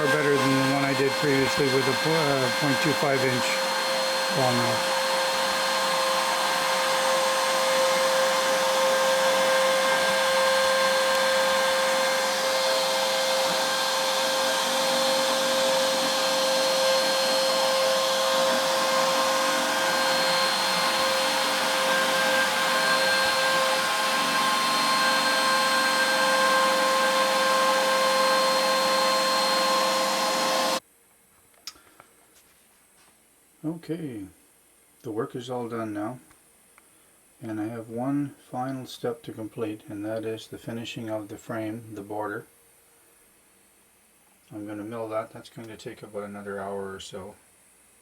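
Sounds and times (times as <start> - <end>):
router spindle whine: 0.0 - 30.8.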